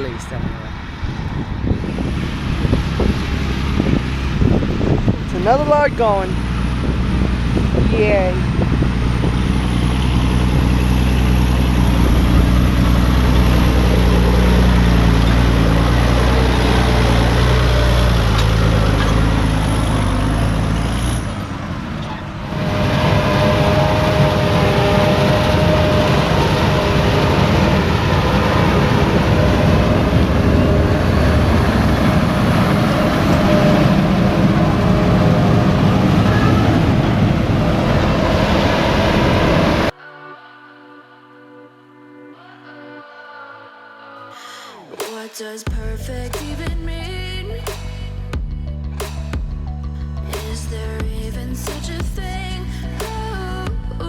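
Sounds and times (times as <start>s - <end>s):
farm machinery engine hum: 0.0s - 39.9s
rough steady machine noise: 1.8s - 39.9s.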